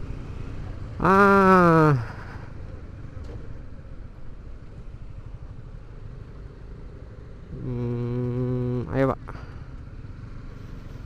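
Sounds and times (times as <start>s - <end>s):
motorcycle engine rumble: 0.0s - 11.0s
wind: 0.0s - 11.0s.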